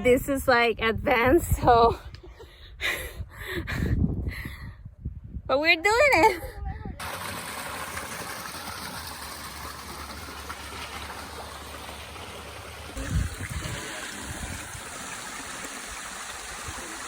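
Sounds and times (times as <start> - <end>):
running water rushing: 7.0 - 17.0.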